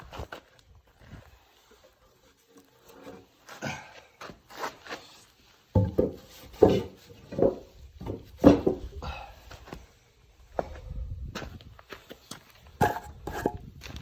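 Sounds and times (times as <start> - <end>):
firewood thuds: 5.8 - 8.9
wooden knocks and scraping: 5.8 - 8.9, 12.8 - 14.0.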